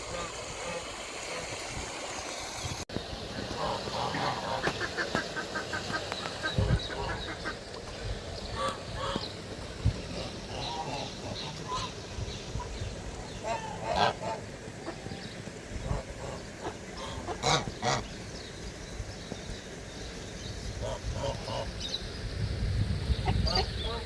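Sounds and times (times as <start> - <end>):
ducks calling: 3.4 - 18.2, 20.7 - 21.8
geese honking: 3.5 - 7.6, 8.6 - 9.3, 10.1 - 18.1.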